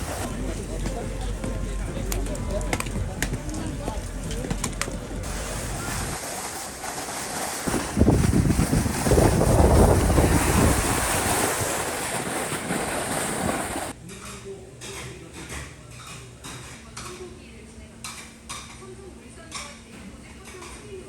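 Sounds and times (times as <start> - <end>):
wind buffeting microphone: 7.7 - 13.9.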